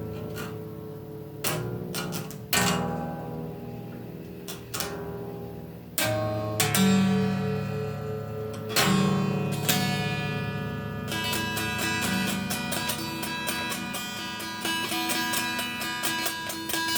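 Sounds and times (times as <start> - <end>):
guitar strumming chords: 0.0 - 16.9.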